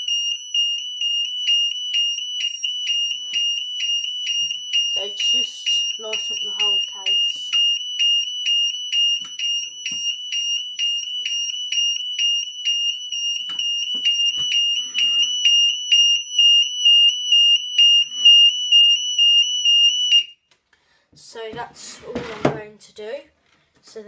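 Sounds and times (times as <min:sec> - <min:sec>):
pulsing high-pitched alarm tone: 0:00.0 - 0:20.3.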